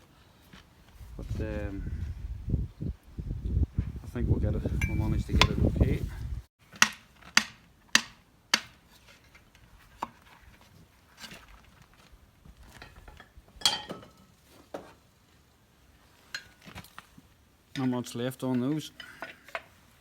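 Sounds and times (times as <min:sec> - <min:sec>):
metal-on-metal knocks and clanks: 0:12.8 - 0:14.3.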